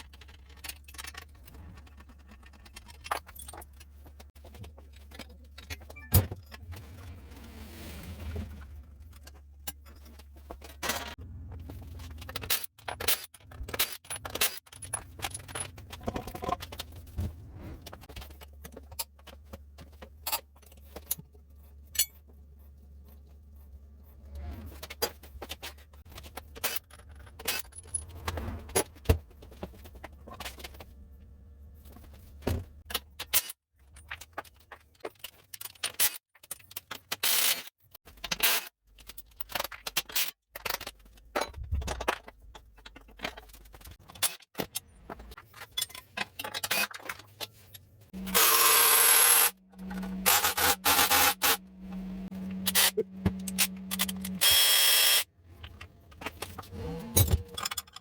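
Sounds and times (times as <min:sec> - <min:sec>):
steady low hum: 0:48.2 - 0:54.4.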